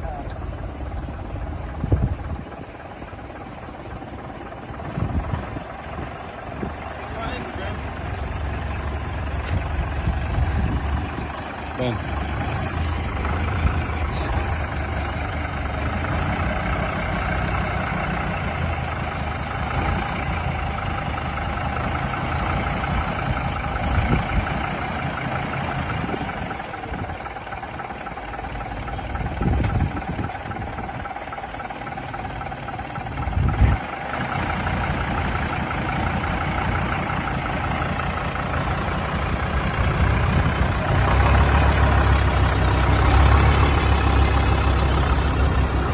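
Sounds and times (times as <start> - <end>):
bus engine idling: 0.0 - 45.9.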